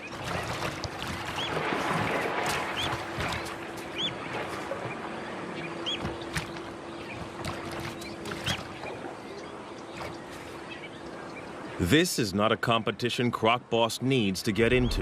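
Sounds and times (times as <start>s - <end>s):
water splashing: 0.0s - 4.8s.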